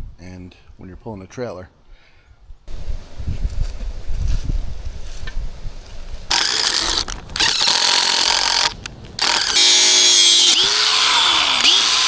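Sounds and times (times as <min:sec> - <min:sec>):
power tool running in spurts: 0:07.5 - 0:12.0.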